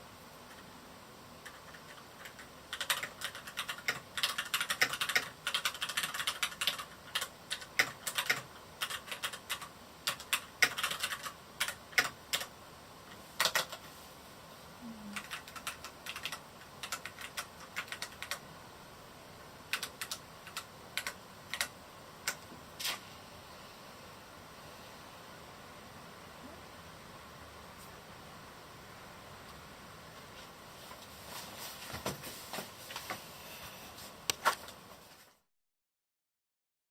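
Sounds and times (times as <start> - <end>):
mechanical keyboard typing: 1.4 - 12.5, 13.4 - 13.8, 15.2 - 18.4, 19.7 - 22.5.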